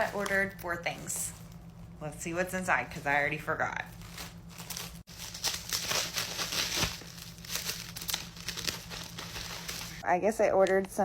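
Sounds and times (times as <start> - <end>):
packing material crinkling: 3.7 - 10.0.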